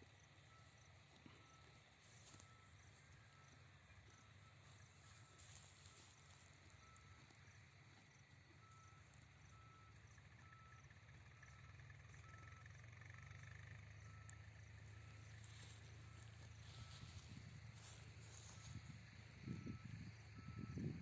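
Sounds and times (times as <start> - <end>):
faint low hum: 0.0 - 21.0
faint short repeating tone: 0.5 - 7.8, 8.6 - 21.0.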